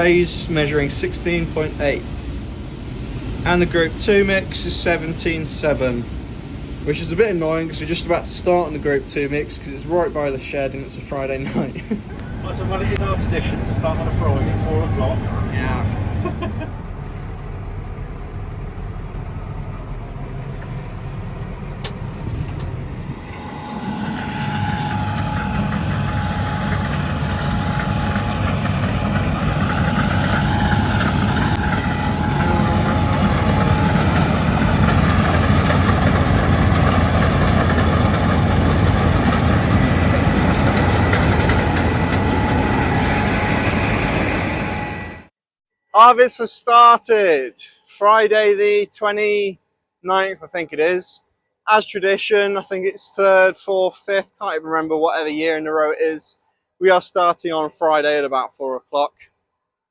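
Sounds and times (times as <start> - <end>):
combine harvester engine running: 0.0 - 45.3
steady machine whine: 0.0 - 45.3.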